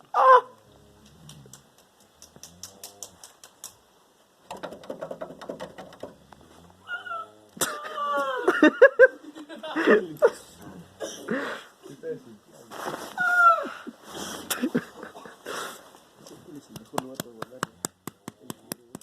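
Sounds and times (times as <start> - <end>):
animal-imitation vocal cries: 6.8 - 8.5.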